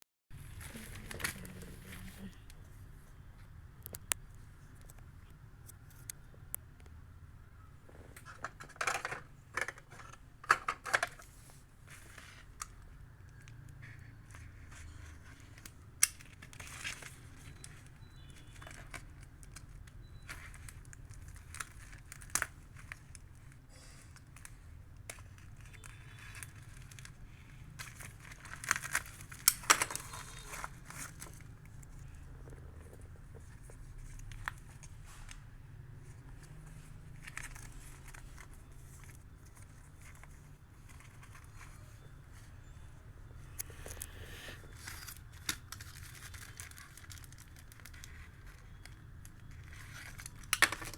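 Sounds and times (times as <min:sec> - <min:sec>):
packaging tearing and crinkling: 0:27.8 - 0:31.9, 0:44.7 - 0:50.9.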